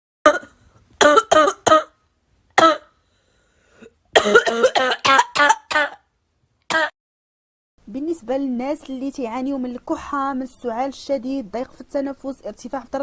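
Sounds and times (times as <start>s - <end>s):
person coughing: 0.3s - 2.0s, 2.6s - 2.9s, 3.8s - 6.1s, 6.7s - 7.0s.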